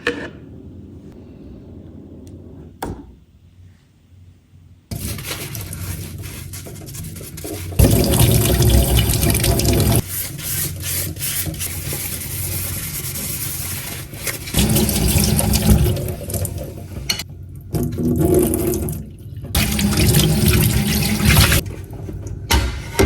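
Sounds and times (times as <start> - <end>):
tap water running into sink: 4.9 - 10.0, 14.2 - 21.6.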